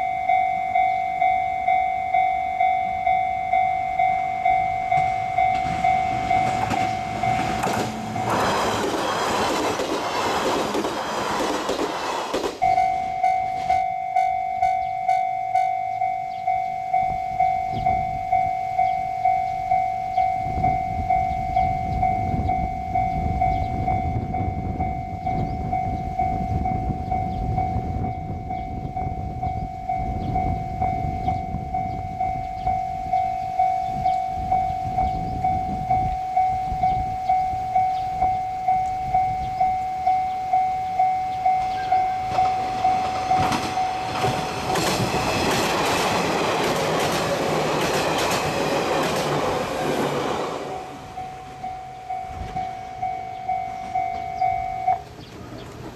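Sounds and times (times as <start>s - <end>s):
level crossing warning bell: 0.0s - 55.2s
train rumble: 0.8s - 55.9s
train wheels clacking: 4.9s - 13.0s, 41.4s - 52.8s.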